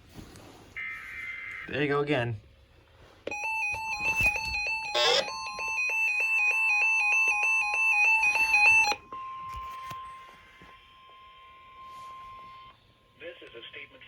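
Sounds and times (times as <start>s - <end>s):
alarm beeper pulsing: 3.3s - 9.4s
steady warning tone: 3.3s - 13.3s.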